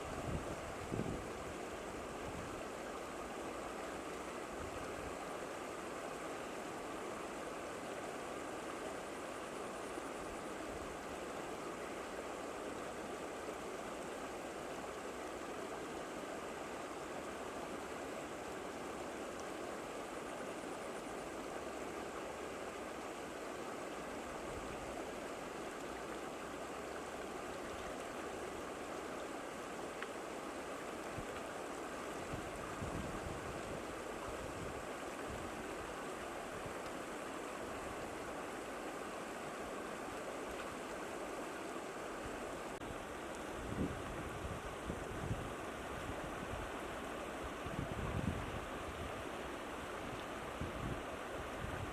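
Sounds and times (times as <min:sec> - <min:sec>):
wind gusts on microphone: 0:00.0 - 0:01.5, 0:32.3 - 0:35.5, 0:43.6 - 0:46.7, 0:47.6 - 0:49.2, 0:50.5 - 0:51.9
water rushing: 0:00.0 - 0:51.9.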